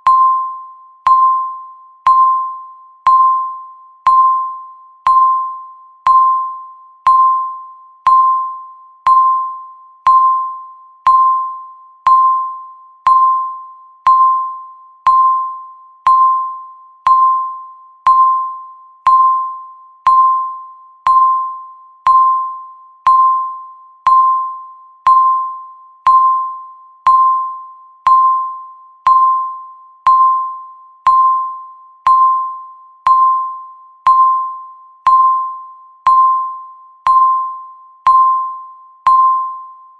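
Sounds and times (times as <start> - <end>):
timer electronic ding: 0.0 - 39.9.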